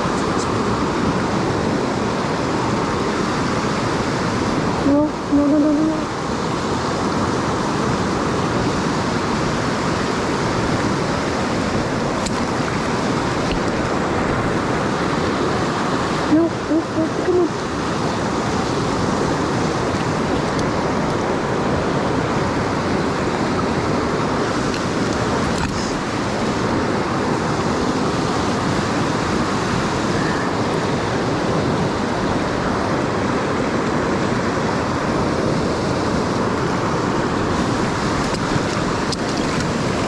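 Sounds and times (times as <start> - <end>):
fast-flowing creek water: 0.0 - 40.0.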